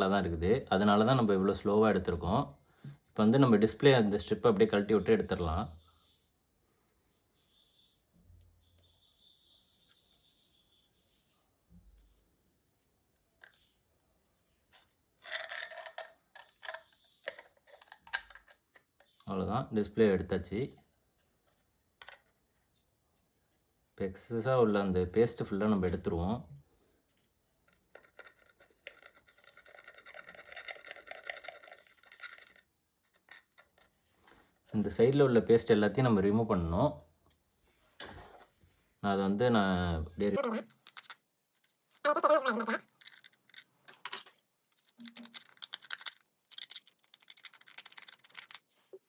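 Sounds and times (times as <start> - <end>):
crackling clicks and scratches: 27.6 - 34.0, 40.4 - 49.0.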